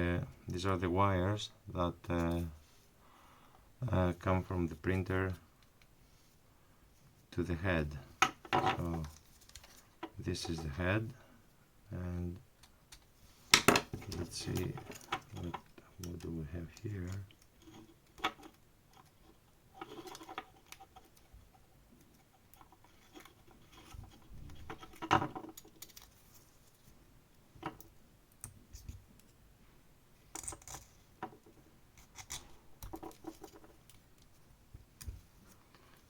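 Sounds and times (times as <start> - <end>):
plastic parts clicking and scraping: 12.6 - 26.5, 30.3 - 34.4.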